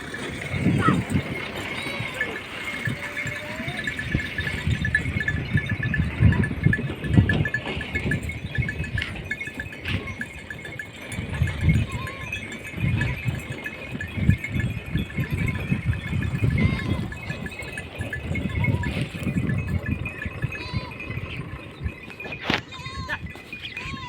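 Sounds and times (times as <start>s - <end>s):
sheep bleating: 0.7s - 4.0s, 11.7s - 12.4s, 16.6s - 17.4s, 20.5s - 21.1s, 22.6s - 24.0s.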